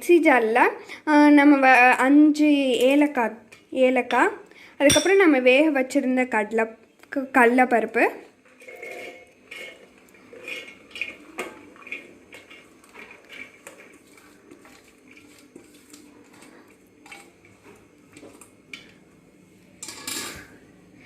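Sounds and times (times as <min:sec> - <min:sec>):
spoon clinking on steel vessels: 0:04.8 - 0:05.2, 0:19.8 - 0:20.6.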